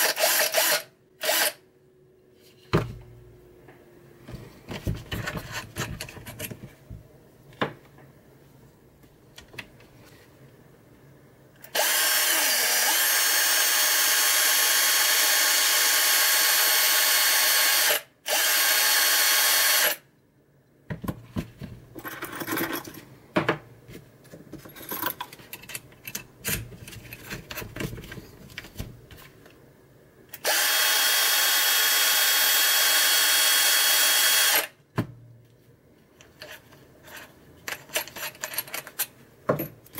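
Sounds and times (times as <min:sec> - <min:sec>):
electric drill whining: 0:00.0 - 0:01.6, 0:11.7 - 0:20.0, 0:30.4 - 0:34.7.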